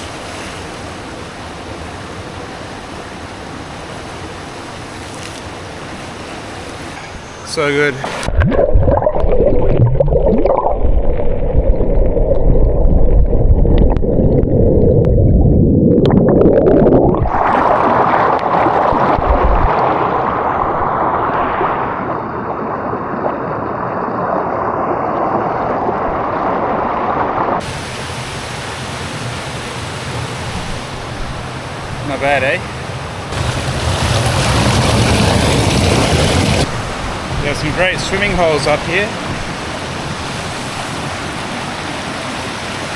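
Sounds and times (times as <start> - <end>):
waterfall rushing: 0.0 - 8.3, 27.6 - 42.9.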